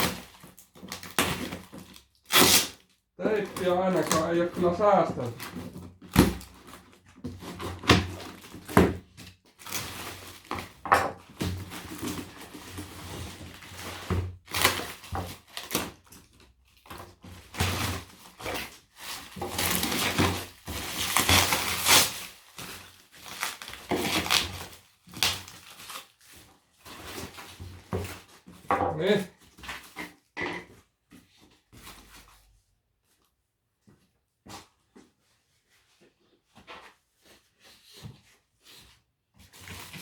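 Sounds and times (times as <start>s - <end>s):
tape and cardboard tearing: 0.0s - 6.8s, 14.4s - 16.1s, 16.8s - 22.4s, 23.2s - 26.1s.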